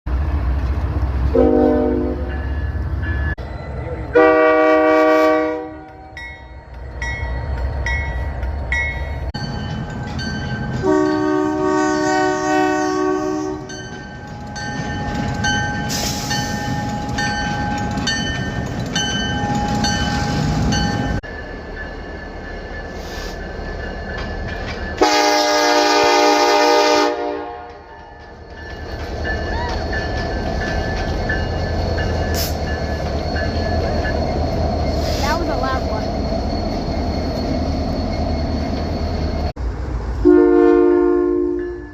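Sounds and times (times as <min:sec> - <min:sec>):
running train rumbling: 0:00.1 - 0:41.9
train air horn blasts: 0:01.3 - 0:02.4, 0:04.1 - 0:06.1, 0:10.8 - 0:13.7, 0:25.0 - 0:27.9, 0:40.2 - 0:41.8.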